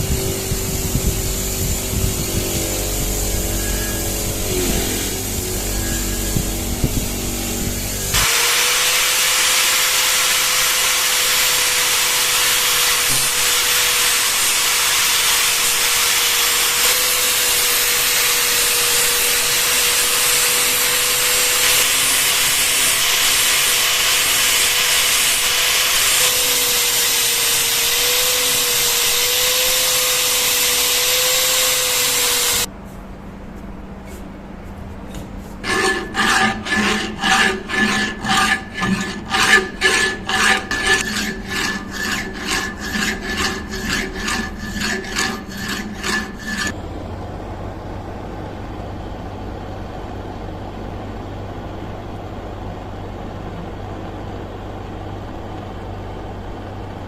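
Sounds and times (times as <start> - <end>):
sander grinding with motor whine: 0.0 - 32.7.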